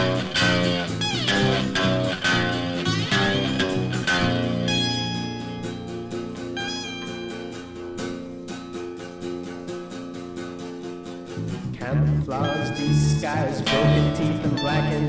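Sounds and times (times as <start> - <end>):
bending high guitar note: 0.0 - 9.3, 12.3 - 15.0
blues guitar chords: 0.0 - 15.0.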